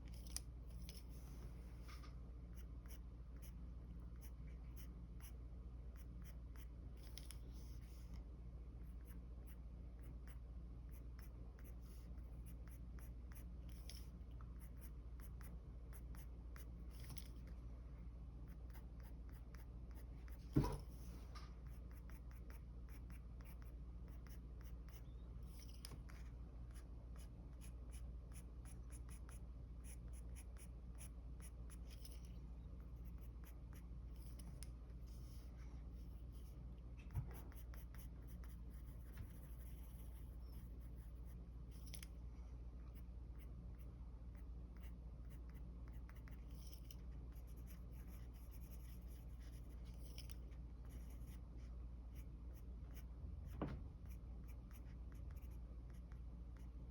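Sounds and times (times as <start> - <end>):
low steady hum: 0.0 - 56.9
pencil scratching on paper: 21.6 - 32.2, 37.1 - 42.0, 43.4 - 51.5, 54.0 - 56.7.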